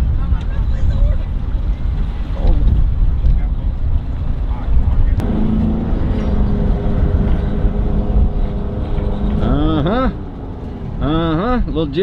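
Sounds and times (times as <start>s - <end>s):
wind buffeting microphone: 0.0s - 12.0s
engine running: 5.1s - 11.6s.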